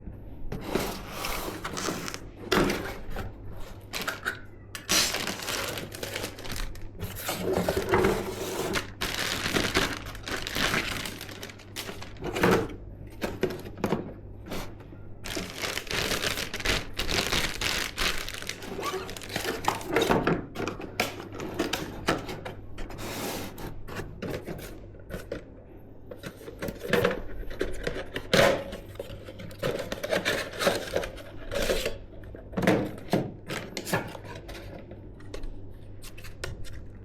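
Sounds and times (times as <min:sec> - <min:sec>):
steady low hum: 0:00.0 - 0:19.9
packaging rustling and crinkling: 0:00.7 - 0:13.8, 0:14.5 - 0:20.1.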